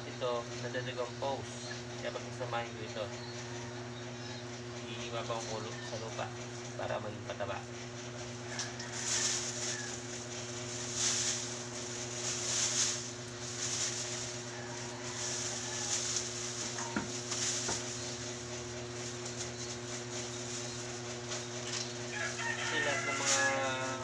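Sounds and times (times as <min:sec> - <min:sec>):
kitchen scraps rustling and scraping: 0:08.4 - 0:24.0.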